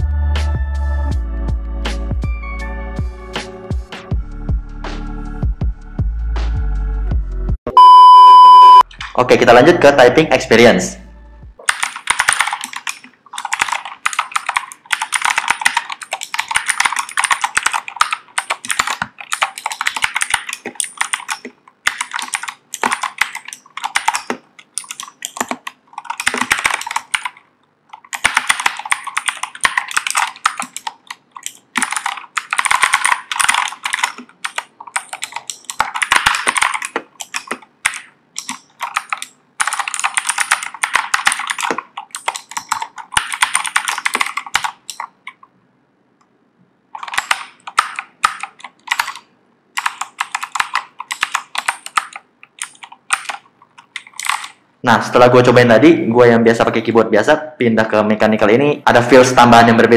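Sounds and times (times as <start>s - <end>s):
mechanical keyboard typing: 11.6s - 45.5s, 47.0s - 54.6s.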